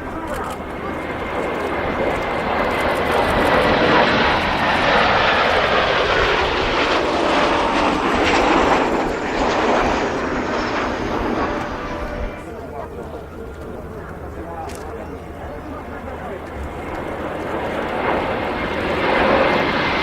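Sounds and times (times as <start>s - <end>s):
jet engine roar passing: 0.0s - 20.0s
jet whine falling in pitch: 5.2s - 12.6s.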